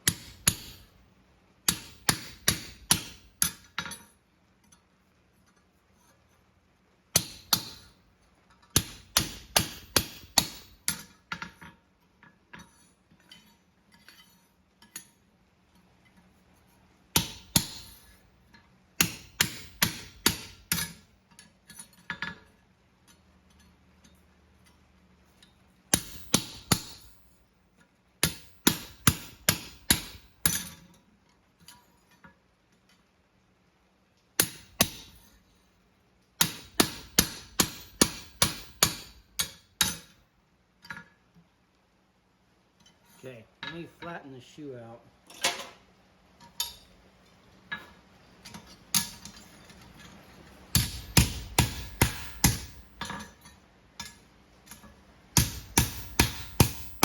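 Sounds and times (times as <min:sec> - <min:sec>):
hammer ringing on metal: 0:36.4 - 0:39.5, 0:50.7 - 0:53.2, 0:55.4 - 0:57.0.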